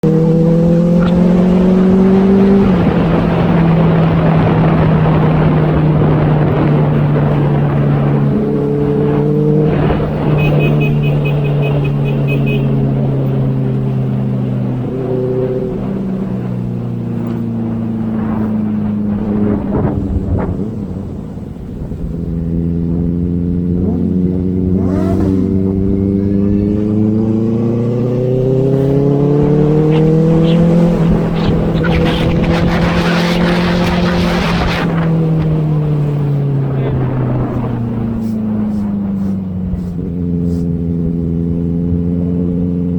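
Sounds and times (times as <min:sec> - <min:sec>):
motorcycle engine running: 0:02.8 - 0:42.9
wind rushing: 0:24.7 - 0:40.4.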